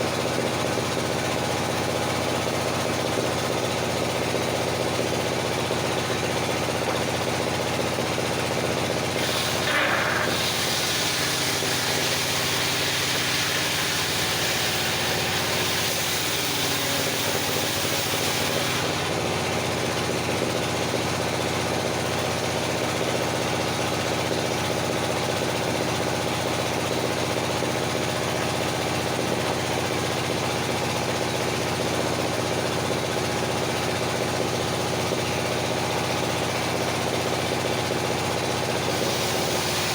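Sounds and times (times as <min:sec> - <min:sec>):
sawmill engine running: 0:00.0 - 0:39.9
saw blade cutting log: 0:09.0 - 0:19.5, 0:38.7 - 0:39.9.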